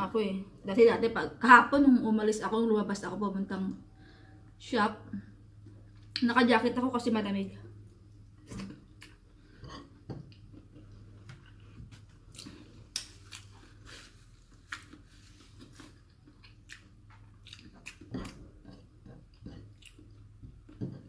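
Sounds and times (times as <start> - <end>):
person chewing food: 8.1 - 21.0.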